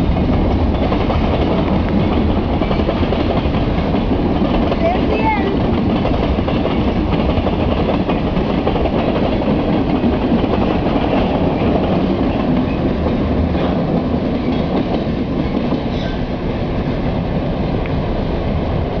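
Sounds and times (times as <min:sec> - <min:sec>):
freight train rumbling past: 0:00.0 - 0:19.0.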